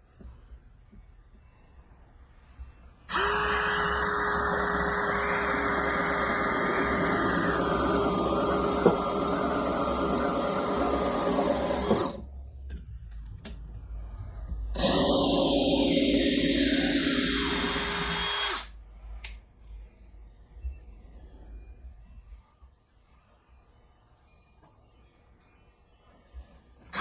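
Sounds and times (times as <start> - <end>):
power drill driving screw: 3.1 - 12.2, 14.8 - 18.7.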